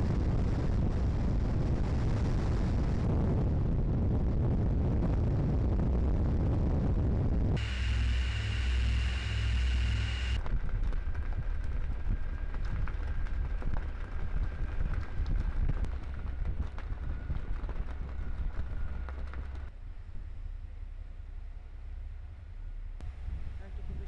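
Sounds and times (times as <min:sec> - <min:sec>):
wind on microphone: 0:00.0 - 0:19.7
high whine: 0:04.9 - 0:10.6
ship engine rumble: 0:06.2 - 0:24.0
faint steady tone: 0:07.6 - 0:10.4.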